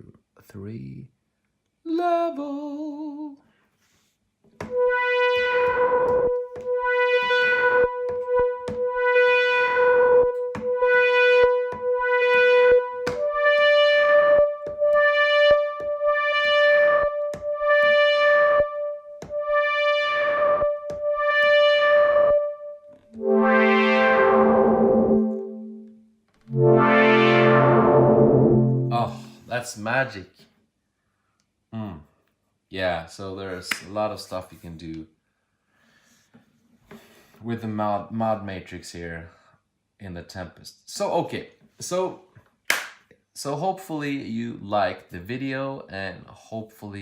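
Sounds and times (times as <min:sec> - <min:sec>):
low full synth chords: 0:04.6 - 0:29.4
synthesizer pad pulsing: 0:04.6 - 0:29.4.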